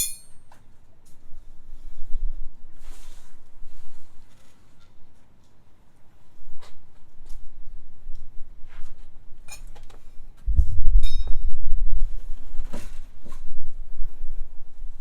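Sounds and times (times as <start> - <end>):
metal objects clinking: 0.0 - 0.4.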